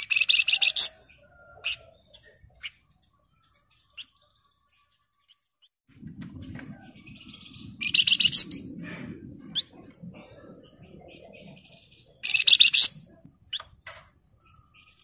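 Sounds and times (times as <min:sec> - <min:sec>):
songbird chirp: 0:00.0 - 0:15.0
low rumbling noise: 0:05.9 - 0:14.9
bird chattering trill: 0:10.9 - 0:13.7.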